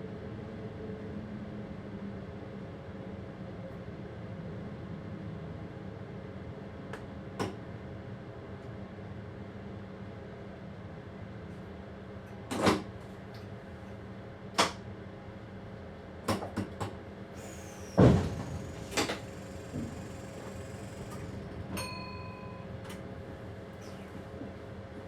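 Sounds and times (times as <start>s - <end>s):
cab equipment hum: 17.4s - 24.5s.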